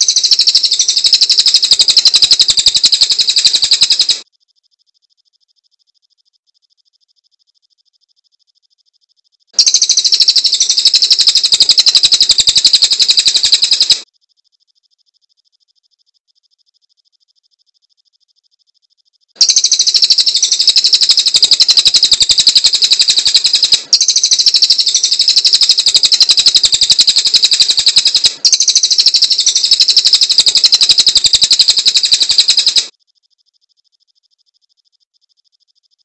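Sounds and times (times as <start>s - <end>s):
songbird rapid chatter: 0.0s - 4.2s, 9.6s - 14.1s, 19.4s - 32.9s.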